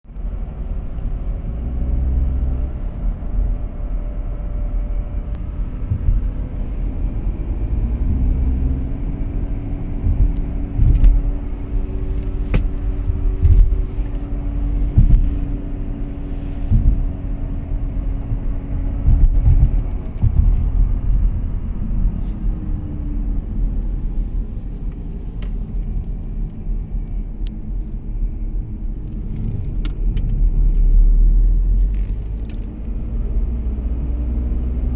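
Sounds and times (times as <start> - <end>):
heavy road rumble: 0.0 - 34.9
wheel bearing drone: 5.0 - 22.8
knocks: 14.9 - 15.5, 16.7 - 17.2.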